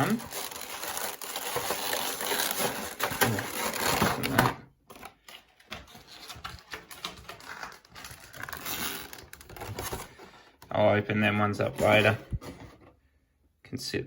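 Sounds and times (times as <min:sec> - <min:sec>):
packaging rustling and clicking: 0:00.0 - 0:10.3.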